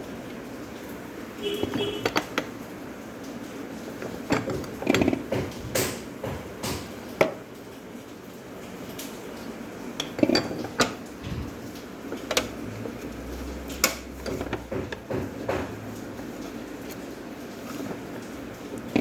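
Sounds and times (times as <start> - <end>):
dishes clinking and knocking: 4.0 - 7.4, 10.0 - 12.6, 13.8 - 15.9.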